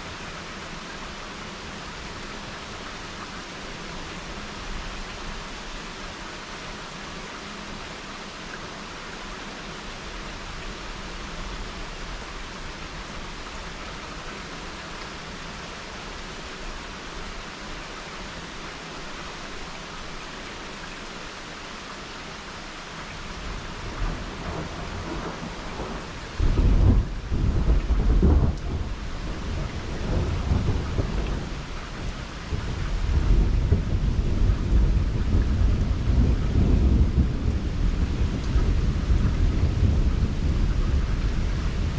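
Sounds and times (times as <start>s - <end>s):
steady rain hiss: 0.0s - 41.9s
thunder rumbling: 23.8s - 41.9s.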